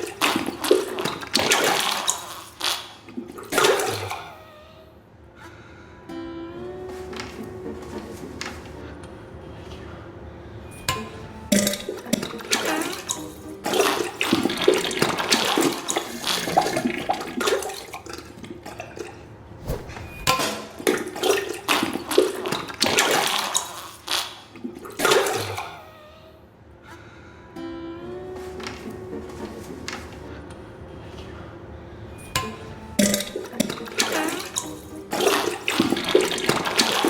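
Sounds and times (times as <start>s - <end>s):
wet splattering into toilet water: 0.0s - 4.2s, 11.6s - 19.2s, 20.3s - 25.6s, 33.0s - 37.0s.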